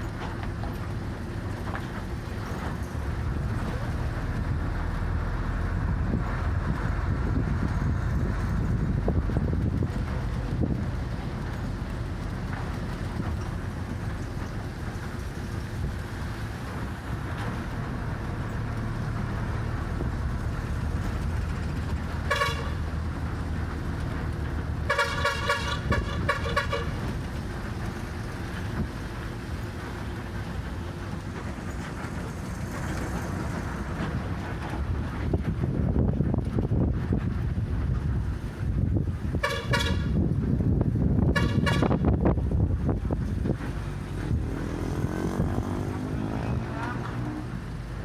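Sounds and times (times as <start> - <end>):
bus engine and road rumble: 0.0 - 48.0
vehicle horn: 22.2 - 22.9, 24.9 - 27.1, 39.4 - 40.2, 41.2 - 42.1.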